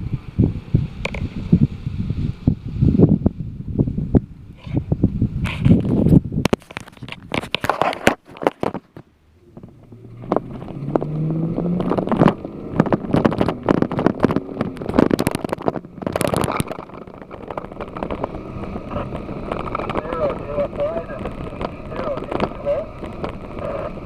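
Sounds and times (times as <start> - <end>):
wind buffeting microphone: 0.0 - 24.0
vehicle engine running: 9.1 - 24.0.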